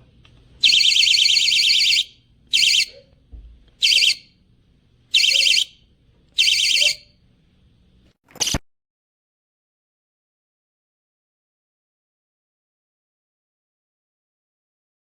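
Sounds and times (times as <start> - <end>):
high-pitched warbling alarm siren: 0.6 - 2.9, 3.8 - 4.2, 5.2 - 5.7, 6.4 - 7.0.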